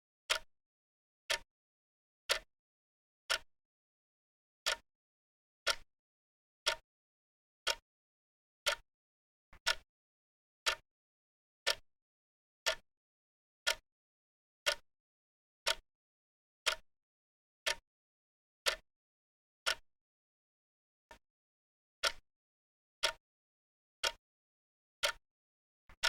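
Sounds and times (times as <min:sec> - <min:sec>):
clock ticking: 0:02.3 - 0:02.5, 0:06.6 - 0:06.8, 0:09.6 - 0:09.8, 0:10.6 - 0:10.8, 0:12.6 - 0:12.8.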